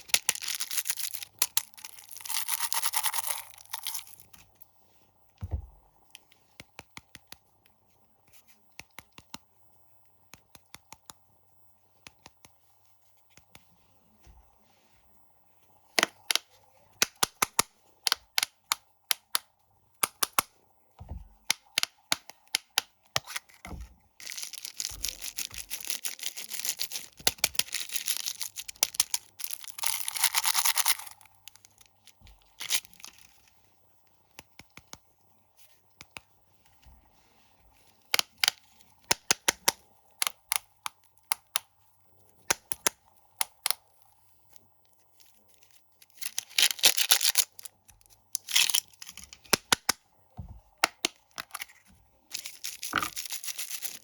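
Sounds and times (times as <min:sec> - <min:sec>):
plastic wrappers crinkling and tearing: 0:00.0 - 0:04.4, 0:24.2 - 0:33.4, 0:45.1 - 0:49.5, 0:52.3 - 0:54.0.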